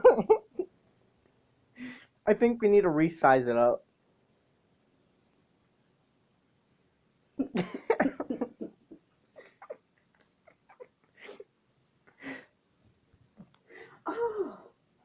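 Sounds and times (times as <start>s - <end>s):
person coughing: 7.4s - 8.7s.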